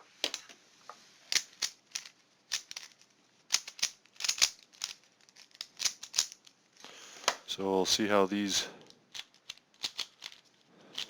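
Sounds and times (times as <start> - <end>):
puzzle cube layers clicking: 1.3 - 6.4, 9.2 - 10.4.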